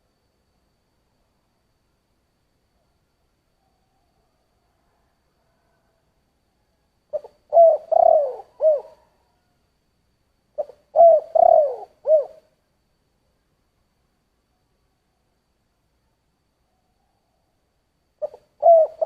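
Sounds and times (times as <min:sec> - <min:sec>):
dove cooing: 0:07.1 - 0:09.5, 0:10.6 - 0:12.5, 0:18.2 - 0:19.0.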